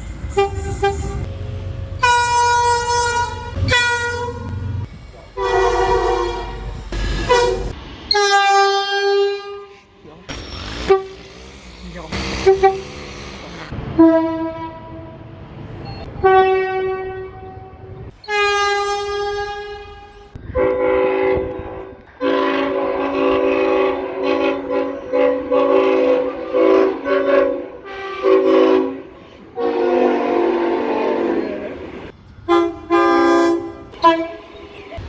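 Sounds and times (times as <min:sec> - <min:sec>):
chord train horn blasts: 0:00.3 - 0:01.3, 0:02.0 - 0:09.7, 0:10.7 - 0:15.3, 0:16.2 - 0:34.8
single-note train horn blasts: 0:02.0 - 0:04.7, 0:05.4 - 0:06.6, 0:07.2 - 0:09.7, 0:16.2 - 0:31.6, 0:32.5 - 0:34.6.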